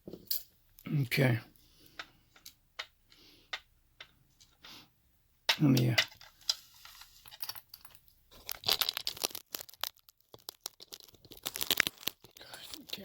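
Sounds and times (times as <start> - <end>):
small hard objects clicking: 1.8 - 4.5, 5.5 - 13.0.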